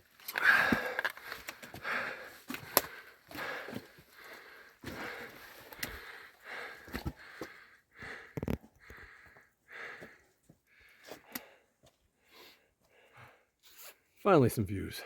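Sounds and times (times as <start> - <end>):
person breathing hard: 0.3 - 13.6.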